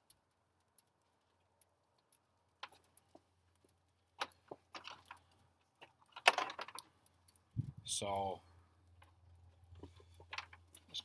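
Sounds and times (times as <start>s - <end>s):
small objects clicking and clinking: 0.0s - 11.0s.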